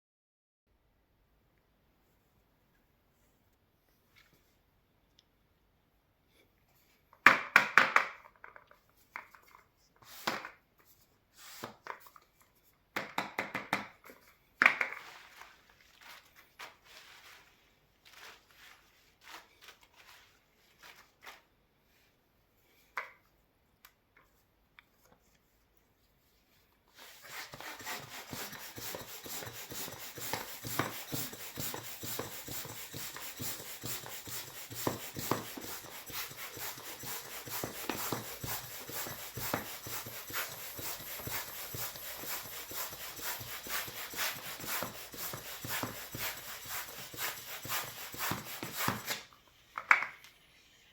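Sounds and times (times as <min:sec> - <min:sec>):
balloons rubbing and squeaking: 0:26.9 - 0:49.2
rapid rasping rubber rub: 0:27.0 - 0:49.2.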